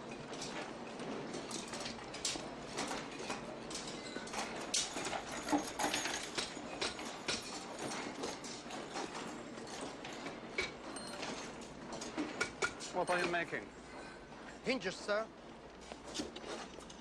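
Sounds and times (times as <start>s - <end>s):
hand tools tapping metal: 12.0s - 13.6s.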